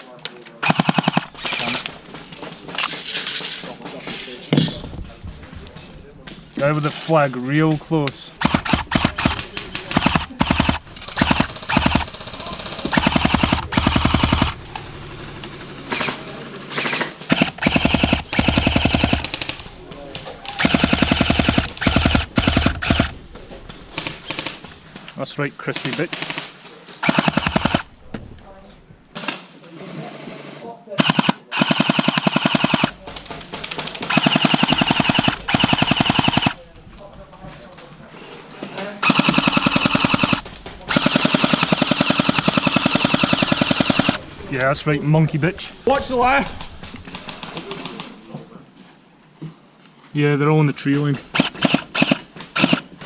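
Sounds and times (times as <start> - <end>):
airsoft guns firing bursts: 0.6 - 3.7, 6.6 - 23.3, 23.9 - 24.7, 25.7 - 28.0, 31.0 - 36.8, 39.0 - 44.3, 51.2 - 53.0.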